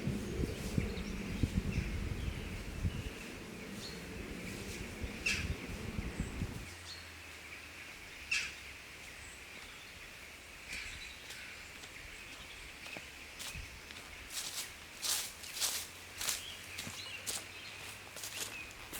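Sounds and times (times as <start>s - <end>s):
low rumble: 0.0s - 6.7s
birds calling: 0.0s - 18.9s.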